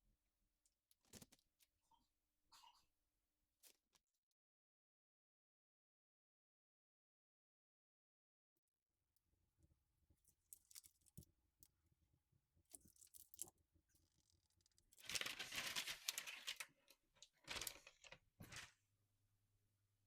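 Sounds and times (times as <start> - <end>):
rustling and crinkling: 12.7 - 18.7.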